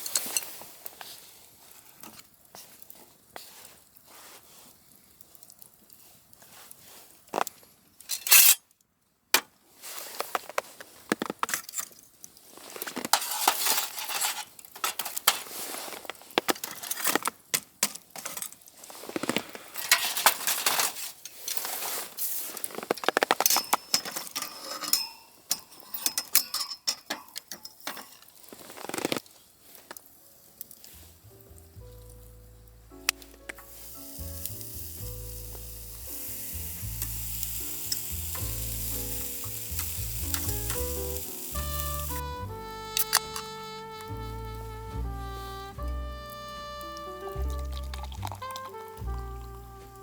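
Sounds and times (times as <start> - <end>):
cookware clinking and scraping: 13.1 - 15.6, 19.8 - 21.7, 23.5 - 28.3
rustling: 18.6 - 23.8, 28.1 - 50.0.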